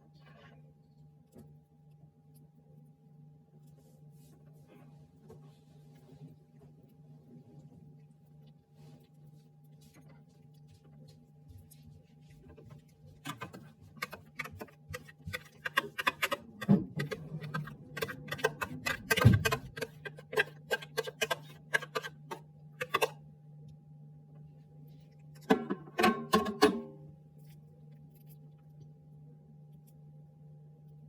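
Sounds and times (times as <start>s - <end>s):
faint steady hum: 0.0s - 31.0s
kitchen utensils clicking and knocking: 13.3s - 23.2s, 25.4s - 26.9s.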